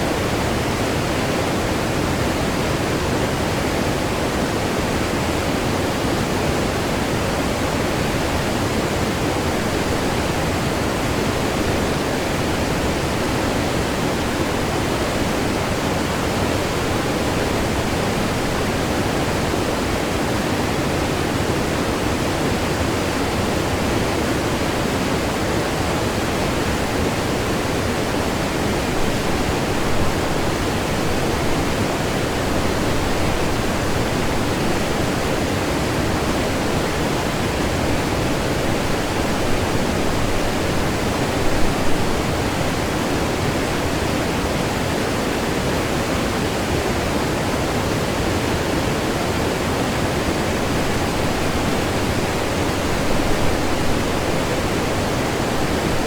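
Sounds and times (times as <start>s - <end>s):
waterfall rushing: 4.4s - 56.0s.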